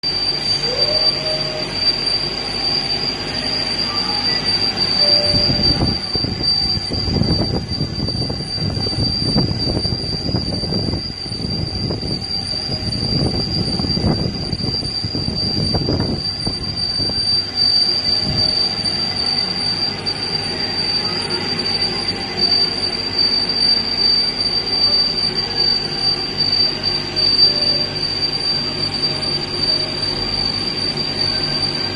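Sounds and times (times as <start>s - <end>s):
boring machine running: 0.0s - 31.9s
high-pitched squeal: 0.0s - 31.9s
low rumbling: 3.4s - 22.4s.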